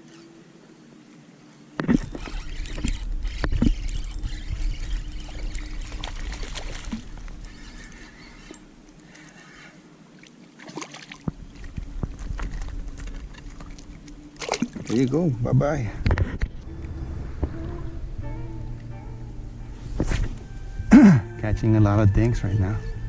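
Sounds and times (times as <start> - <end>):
faint steady hum: 0.0 - 23.0
water splashing and sloshing: 1.7 - 20.7
low rumble: 11.4 - 23.0.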